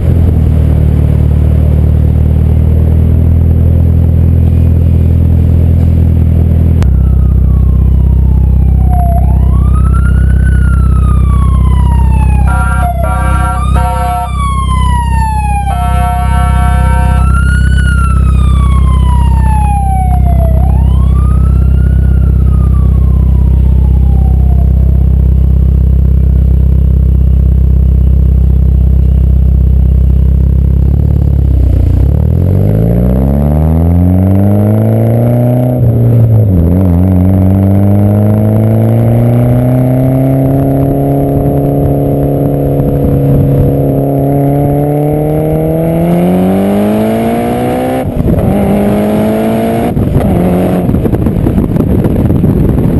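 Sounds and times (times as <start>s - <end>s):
car engine idling and revving: 0.0s - 52.9s
siren wailing: 6.8s - 25.2s.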